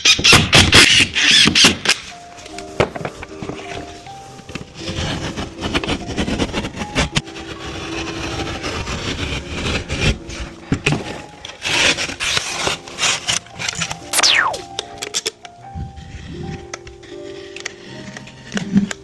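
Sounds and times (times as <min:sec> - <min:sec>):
rough scraping and rasping: 0:04.8 - 0:14.0.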